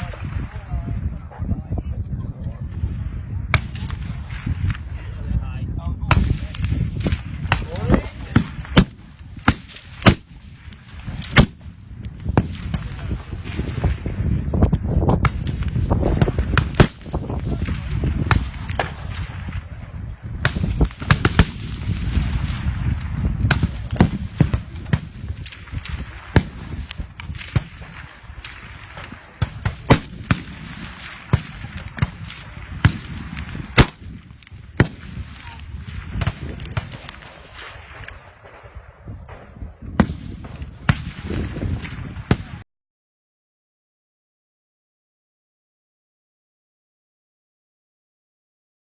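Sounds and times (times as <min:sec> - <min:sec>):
steady low rumble: 0:00.0 - 0:42.6
rifle shots: 0:06.1 - 0:14.1, 0:15.2 - 0:19.8, 0:20.4 - 0:22.7, 0:23.4 - 0:42.6.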